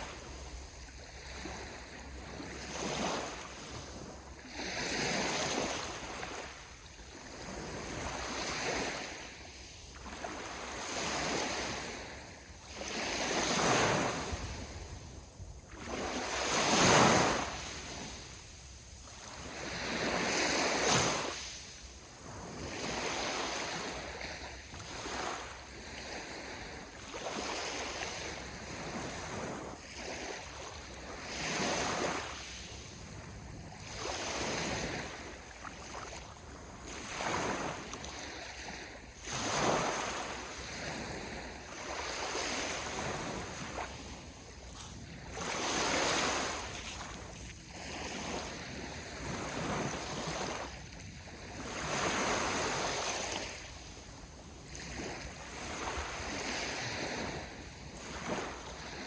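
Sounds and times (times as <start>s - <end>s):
sea waves breaking on shore: 0.0s - 59.0s.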